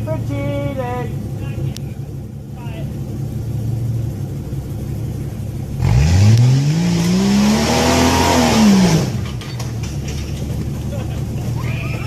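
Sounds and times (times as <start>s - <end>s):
engine revving: 5.6s - 12.0s.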